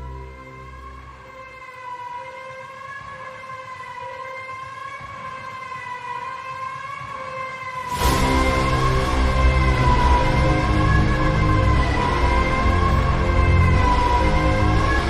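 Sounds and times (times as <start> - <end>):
siren-like synth tone: 0.0 - 15.0
loud music with deep bass: 7.9 - 15.0.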